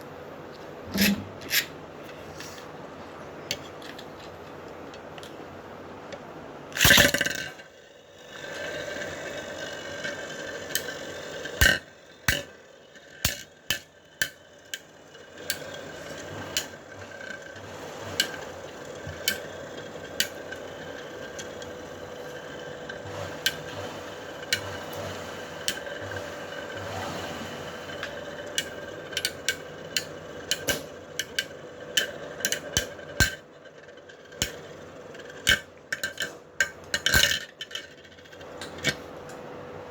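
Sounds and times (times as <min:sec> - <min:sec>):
spinning tops whirring: 0:06.7 - 0:39.3
spinning tops clacking together: 0:06.8 - 0:07.7, 0:10.0 - 0:17.4, 0:27.9 - 0:39.0
spinning tops launched: 0:06.8 - 0:33.4.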